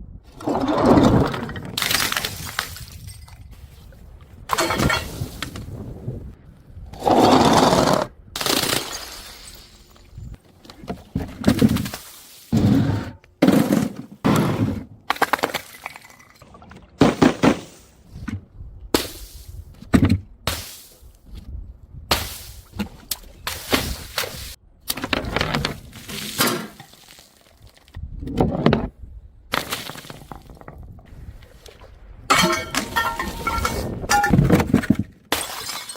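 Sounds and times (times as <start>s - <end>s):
glass bottles smashing: 4.5s - 5.2s, 8.6s - 10.2s, 32.3s - 34.5s, 35.3s - 35.9s
glass shards scattering: 8.7s - 10.2s, 32.3s - 34.4s, 35.3s - 35.9s.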